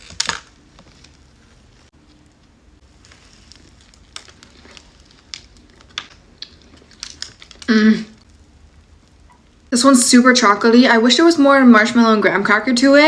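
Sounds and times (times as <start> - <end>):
person chewing food: 0.0 - 9.7.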